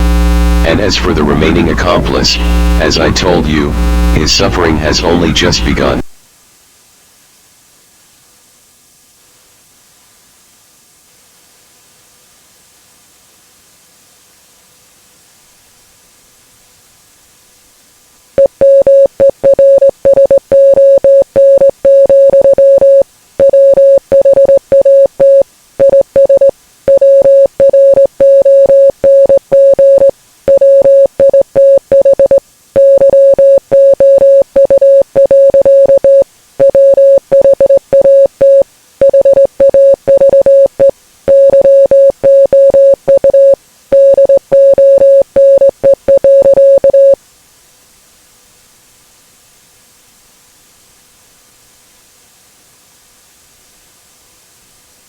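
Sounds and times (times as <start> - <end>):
morse code beeps: 18.4 - 47.2.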